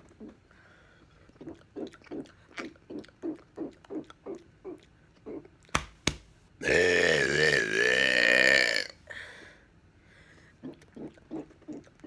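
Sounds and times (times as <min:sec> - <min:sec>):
man gulping: 0:06.6 - 0:09.0.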